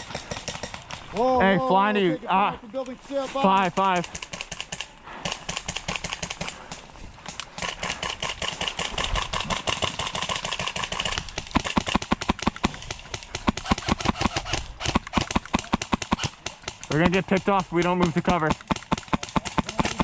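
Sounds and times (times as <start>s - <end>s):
airsoft guns firing: 0.0s - 1.3s, 3.4s - 20.0s.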